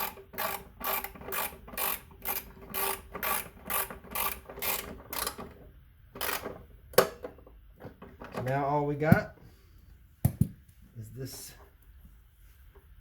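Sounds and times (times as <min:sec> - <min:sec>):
hand ratchet rasping: 0:00.0 - 0:05.4.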